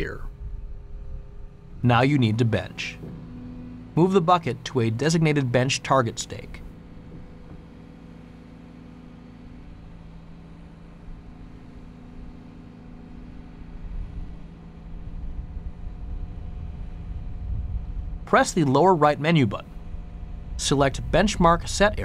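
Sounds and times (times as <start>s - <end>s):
excavator diesel engine rumbling: 1.6s - 13.7s, 18.3s - 22.0s.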